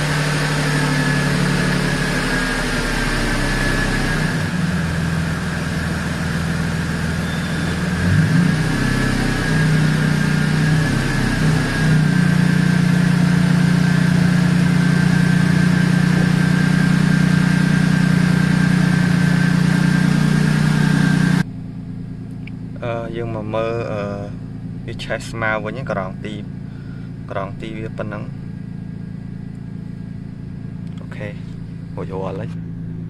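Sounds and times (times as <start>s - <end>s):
pickup engine idling: 0.0s - 8.4s, 9.3s - 25.0s, 26.4s - 27.4s
thin high whine: 6.4s - 8.1s, 9.0s - 21.4s.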